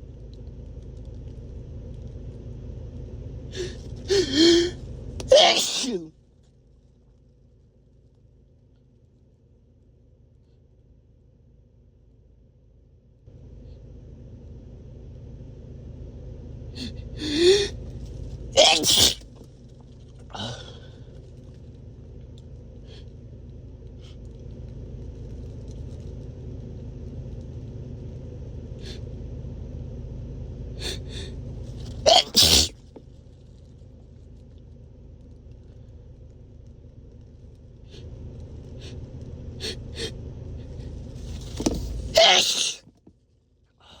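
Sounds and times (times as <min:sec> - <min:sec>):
low background rumble: 0:00.0 - 0:44.0
gasping inhale: 0:03.6 - 0:04.8
man sneezing hard: 0:03.6 - 0:06.1, 0:18.6 - 0:19.2, 0:32.1 - 0:32.7, 0:42.2 - 0:42.8.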